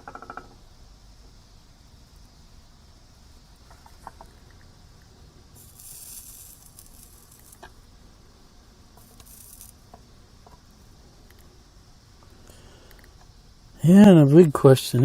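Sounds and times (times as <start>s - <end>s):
flux sizzling: 1.8s - 12.8s.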